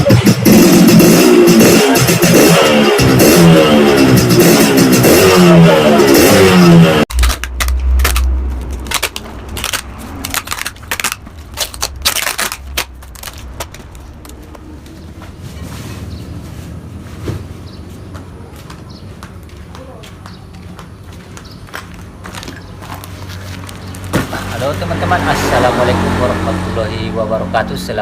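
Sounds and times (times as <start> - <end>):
motorcycle engine revving: 0.0 - 7.1, 23.2 - 28.0
sharp clicks and pops: 7.1 - 14.6
low rumble: 7.1 - 16.6.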